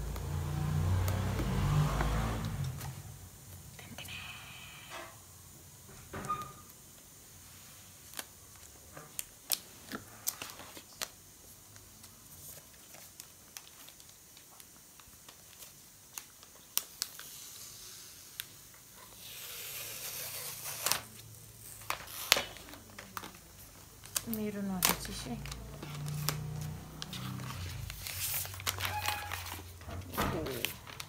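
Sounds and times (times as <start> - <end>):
packaging clicks and crinkles: 8.0 - 17.5, 18.3 - 31.0
packaging tearing and rustling: 8.0 - 31.0.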